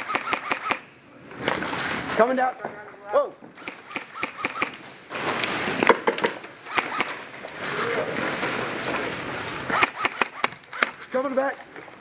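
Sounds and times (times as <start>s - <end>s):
gear scraping and rustling: 4.8s - 9.8s.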